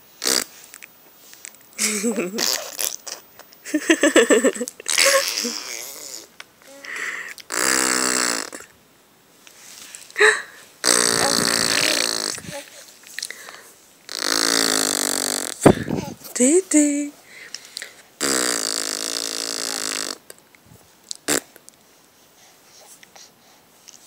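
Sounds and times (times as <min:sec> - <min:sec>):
mouth raspberry fart noises: 0:00.2 - 0:00.6, 0:02.2 - 0:03.4, 0:04.8 - 0:06.3, 0:07.5 - 0:08.7, 0:10.8 - 0:12.6, 0:14.1 - 0:16.2, 0:18.2 - 0:20.4, 0:21.2 - 0:21.6.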